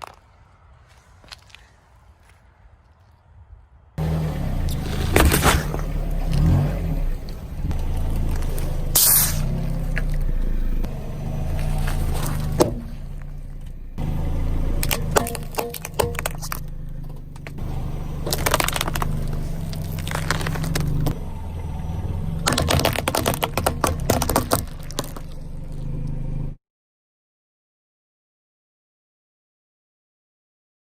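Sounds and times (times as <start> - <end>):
tyres crushing objects: 4.0 - 21.2, 22.2 - 25.9
car engine rumbling: 4.0 - 26.6.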